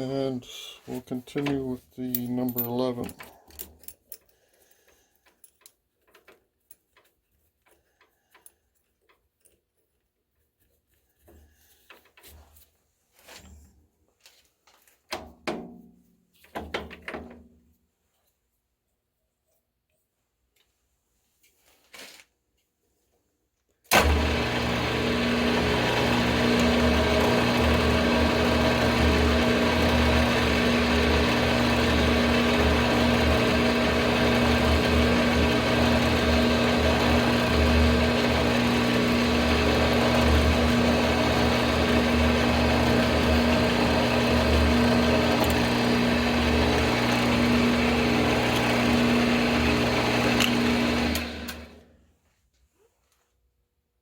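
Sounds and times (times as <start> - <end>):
drill press motor humming: 23.9 - 51.8.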